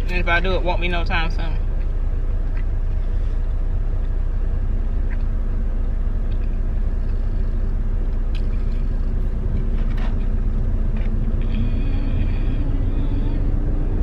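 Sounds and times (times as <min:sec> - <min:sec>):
truck engine rumble: 0:00.0 - 0:14.0.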